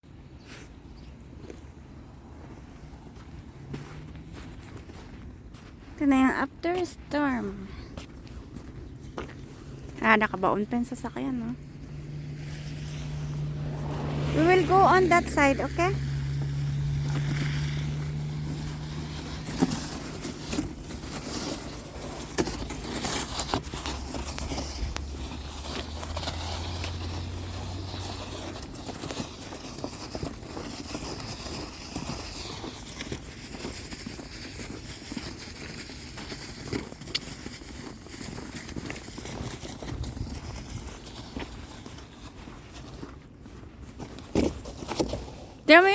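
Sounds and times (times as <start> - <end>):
footsteps crunching in snow: 0.4 - 45.9
vehicle engine humming: 7.2 - 30.5.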